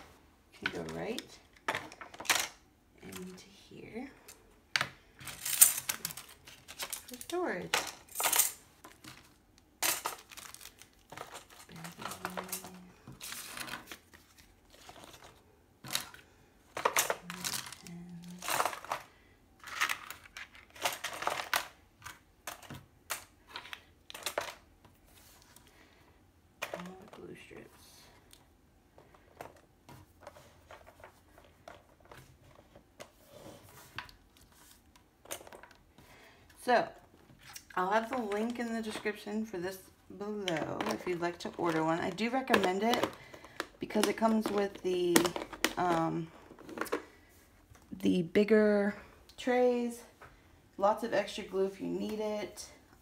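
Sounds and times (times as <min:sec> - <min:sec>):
packaging crinkling: 0:05.2 - 0:07.6, 0:08.3 - 0:16.2.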